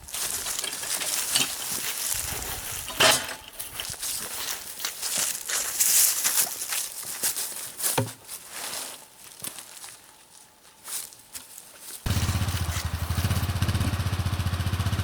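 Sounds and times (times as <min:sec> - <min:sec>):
footsteps on leaves and brush: 0:00.0 - 0:13.7
small engine running: 0:12.1 - 0:15.0.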